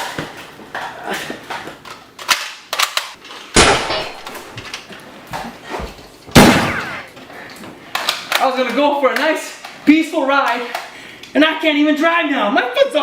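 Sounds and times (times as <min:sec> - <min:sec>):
gunshots: 0:03.6 - 0:04.4, 0:06.4 - 0:07.1.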